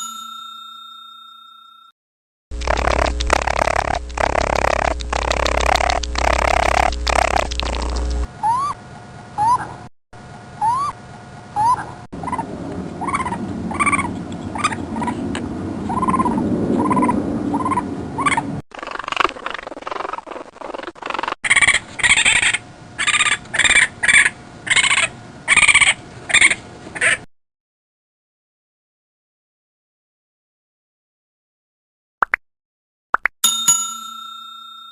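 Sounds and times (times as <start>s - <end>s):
loud sharp animal calls: 15.9s - 27.2s.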